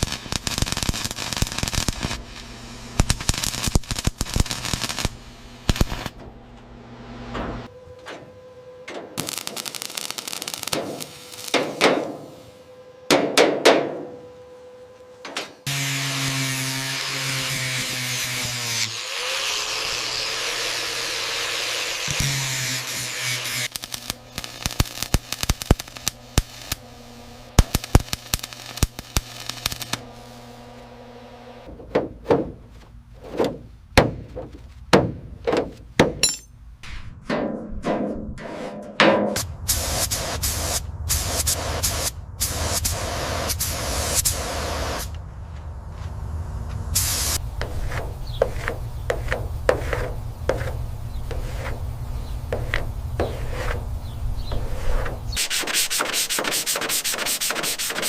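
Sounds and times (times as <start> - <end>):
steady low hum: 0.0 - 7.9, 23.8 - 38.5, 39.4 - 55.4
hammer striking metal: 35.0 - 36.6
metal tools clanging on metal: 36.1 - 36.6.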